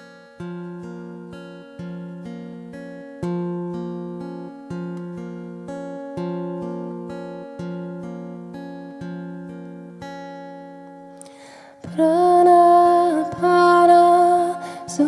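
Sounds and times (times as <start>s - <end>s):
acoustic guitar strumming chords: 0.0s - 15.0s
woman singing long notes: 11.9s - 15.0s.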